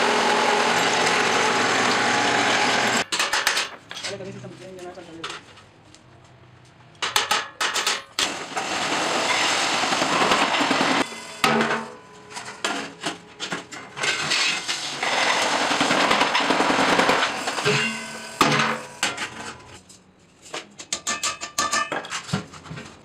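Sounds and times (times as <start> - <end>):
harsh rasping machine noise: 0.0 - 3.0, 8.2 - 13.1, 14.0 - 19.6
sharp metal knocks: 7.0 - 8.2.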